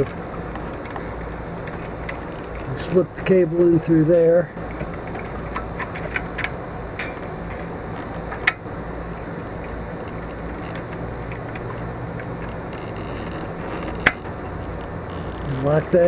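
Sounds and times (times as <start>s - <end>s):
steady background hum: 0.0s - 16.0s
clicks and taps of metal fittings: 4.6s - 8.6s.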